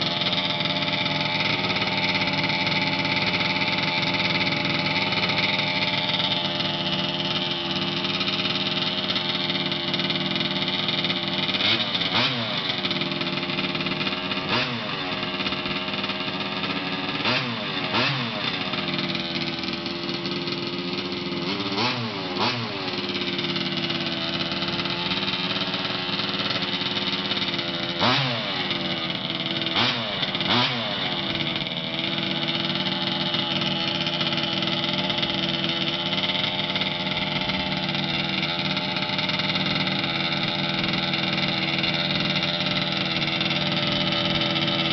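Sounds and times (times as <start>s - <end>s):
engine idling through exhaust: 0.0s - 44.9s
engine throttle blips: 0.0s - 44.9s.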